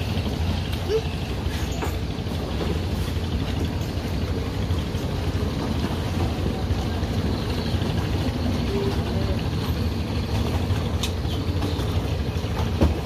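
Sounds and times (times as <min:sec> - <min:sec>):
speedboat engine droning: 0:00.0 - 0:13.0.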